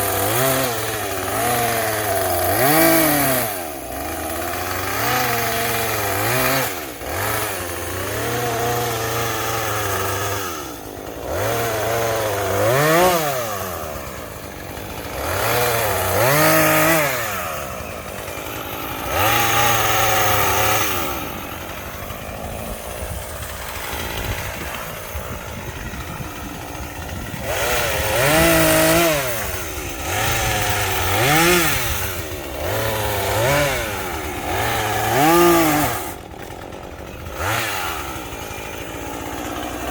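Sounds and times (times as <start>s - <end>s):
chainsaw engine revving: 0.0s - 39.9s.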